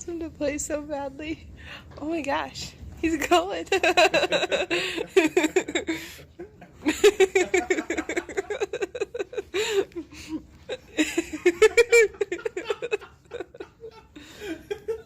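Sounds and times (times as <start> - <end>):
woman laughing: 3.6 - 6.1, 6.8 - 15.0.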